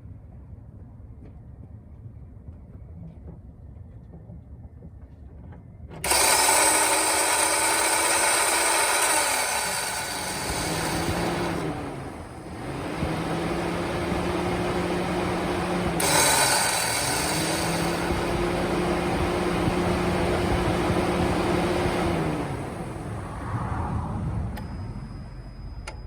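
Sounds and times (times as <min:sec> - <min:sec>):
starter motor whirring and screeching: 0:06.0 - 0:23.6.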